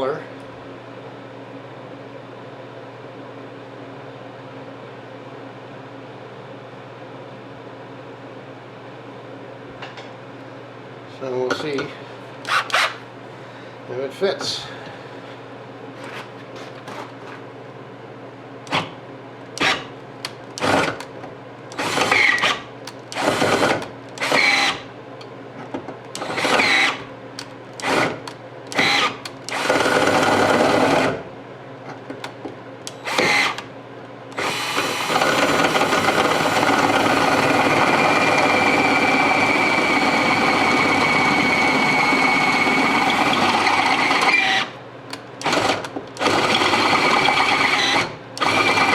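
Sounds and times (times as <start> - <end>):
electric drill whining: 12.5 - 13.0, 19.6 - 19.9, 20.6 - 21.0, 21.7 - 24.8, 26.2 - 27.1, 27.8 - 31.2, 32.9 - 33.7, 34.4 - 44.8, 45.4 - 48.9.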